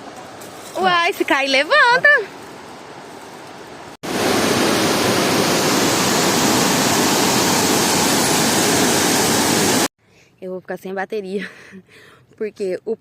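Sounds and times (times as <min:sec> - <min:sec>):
waterfall rushing: 0:04.0 - 0:09.9.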